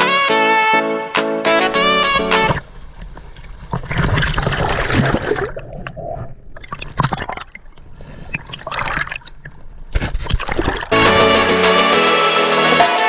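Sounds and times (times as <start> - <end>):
water gurgling and sloshing: 1.7 - 11.5.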